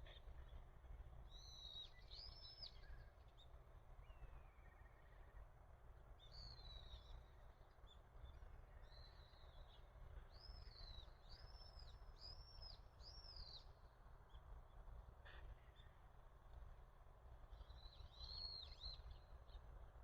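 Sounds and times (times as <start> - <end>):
faint bird calls: 15.2 - 16.1.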